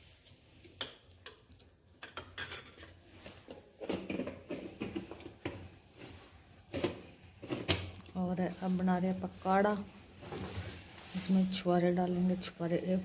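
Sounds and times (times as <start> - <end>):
kitchen utensils clinking: 2.0 - 3.0.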